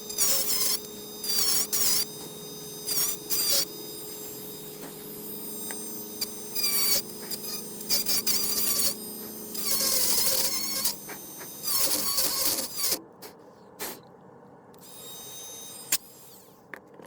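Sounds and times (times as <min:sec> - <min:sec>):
rotary tool grinding: 0:00.0 - 0:13.0, 0:14.8 - 0:16.6.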